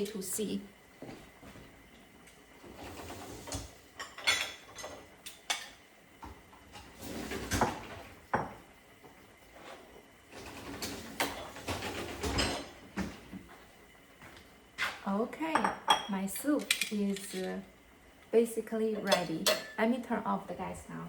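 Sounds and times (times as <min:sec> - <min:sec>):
kitchen clicks and knocks: 0:02.9 - 0:08.6, 0:10.4 - 0:13.2, 0:15.5 - 0:17.6
sliding or scraping sounds: 0:06.8 - 0:07.9.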